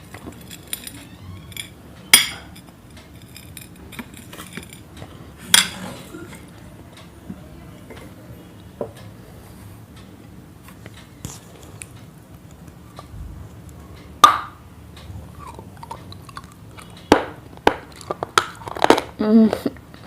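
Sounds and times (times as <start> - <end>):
hard objects clinking: 0.0 - 6.4.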